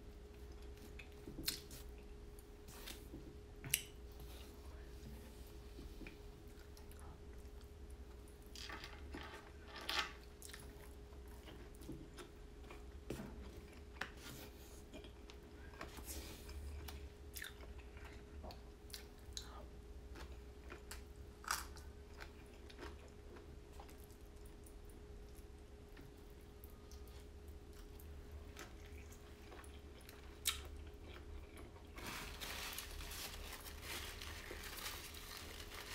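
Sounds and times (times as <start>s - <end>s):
faint steady hum: 0.0s - 35.9s
person chewing food: 10.4s - 32.3s.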